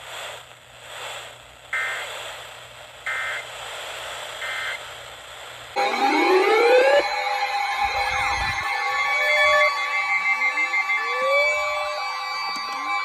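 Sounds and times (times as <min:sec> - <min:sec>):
radio hiss: 0:00.0 - 0:13.0
digital data bursts: 0:05.8 - 0:13.0
rising siren wail: 0:05.8 - 0:13.0.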